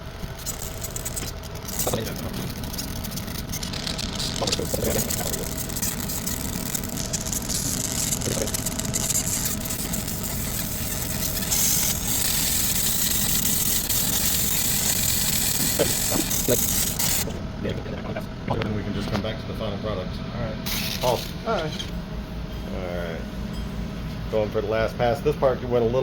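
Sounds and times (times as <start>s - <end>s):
laser engraver humming: 0.0s - 26.0s.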